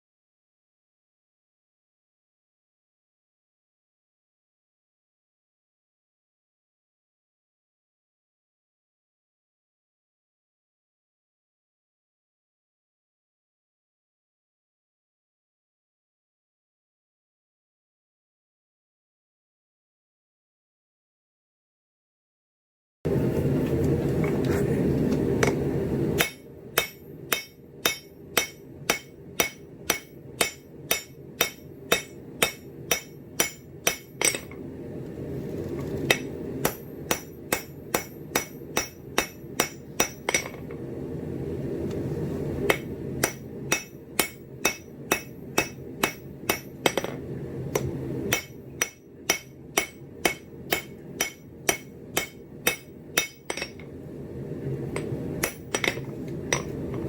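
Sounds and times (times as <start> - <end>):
hammer striking steel on anvil: 26.2 - 34.6, 36.1 - 40.7, 42.7 - 53.9, 55.0 - 56.8.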